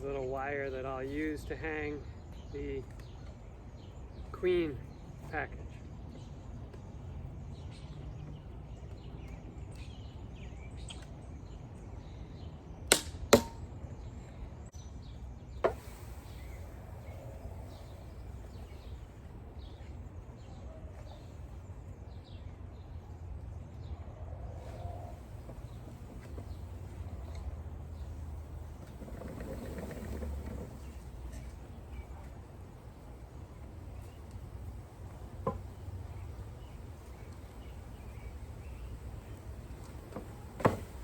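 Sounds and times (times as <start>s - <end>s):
low outdoor rumble: 13.6s - 41.0s.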